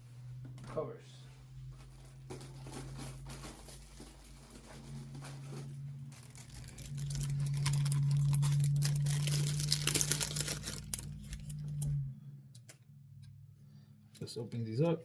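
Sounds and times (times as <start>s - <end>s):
steady low hum: 0.0s - 15.0s
plastic packaging crinkling: 1.7s - 11.8s.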